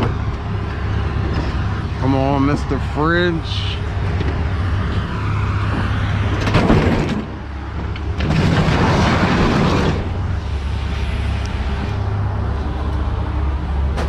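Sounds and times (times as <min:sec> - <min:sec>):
truck engine idling: 0:00.0 - 0:14.0
scraping clattering rush: 0:03.5 - 0:12.0
refrigerator crashing down: 0:08.2 - 0:10.3.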